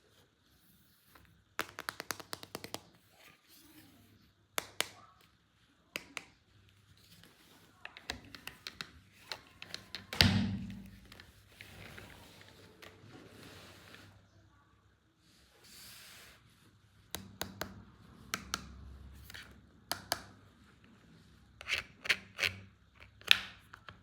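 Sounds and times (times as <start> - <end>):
toy pieces clicking and tapping: 1.6 - 2.9.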